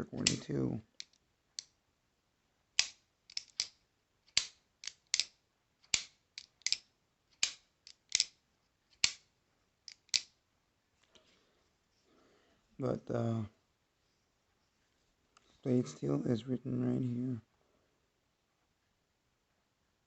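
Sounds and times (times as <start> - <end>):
folding knife clicking: 2.8 - 9.2, 9.9 - 10.3.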